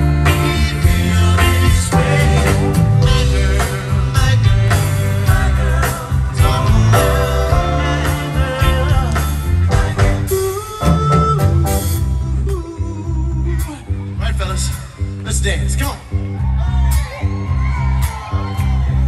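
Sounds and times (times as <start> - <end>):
harmony singing: 0.0 - 13.2
live pop soul band: 0.0 - 15.1.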